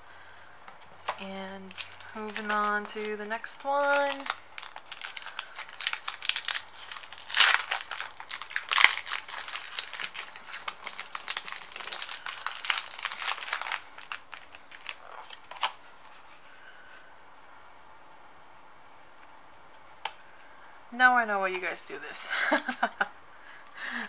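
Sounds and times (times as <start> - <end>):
foil wrapper crinkling and tearing: 1.1 - 16.0
foil wrapper ripping: 1.6 - 15.8.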